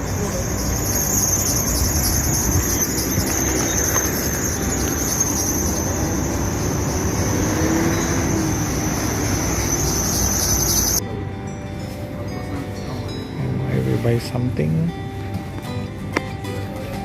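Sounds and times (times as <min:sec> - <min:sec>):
wind roaring: 0:00.0 - 0:11.0
road traffic passing: 0:00.0 - 0:17.0.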